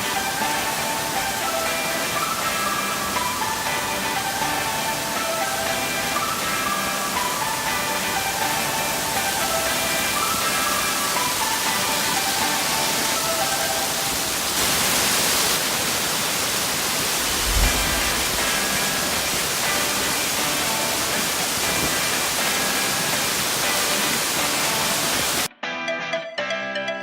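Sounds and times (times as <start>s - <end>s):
faint background music: 0.0s - 14.6s
waterfall rushing: 0.0s - 25.5s.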